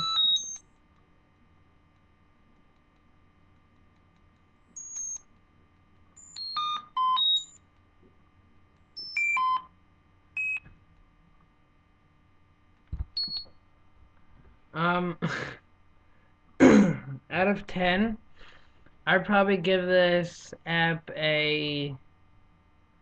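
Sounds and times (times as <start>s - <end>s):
pure-tone beeps changing pitch: 0.0s - 0.6s, 4.8s - 5.2s, 6.2s - 7.6s, 9.0s - 9.7s.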